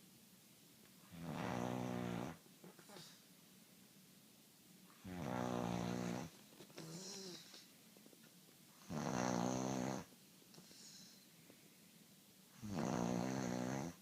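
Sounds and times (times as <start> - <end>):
person snoring: 5.1 - 7.4, 8.9 - 10.1, 12.6 - 14.0.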